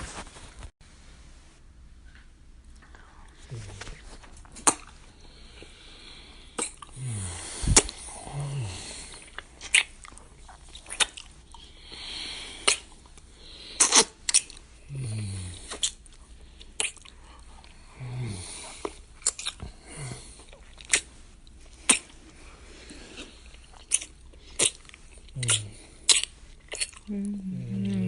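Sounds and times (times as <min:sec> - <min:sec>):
wet lip smacks: 0:04.6 - 0:05.0, 0:06.6 - 0:07.0, 0:09.2 - 0:11.6, 0:12.6 - 0:13.2, 0:13.8 - 0:14.6, 0:15.7 - 0:17.2, 0:18.8 - 0:19.7, 0:20.5 - 0:21.1, 0:21.8 - 0:22.1, 0:23.8 - 0:27.1
breathy exhales: 0:05.2 - 0:09.3.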